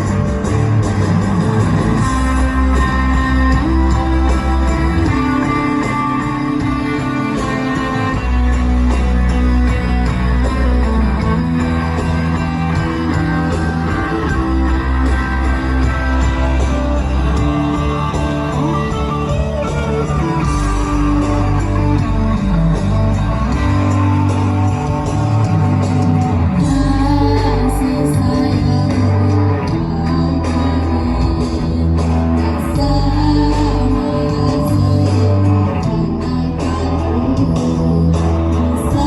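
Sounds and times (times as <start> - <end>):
guitar melody: 0.0 - 39.0
steady bass line: 0.0 - 39.0
person singing: 1.1 - 24.2, 24.9 - 39.0.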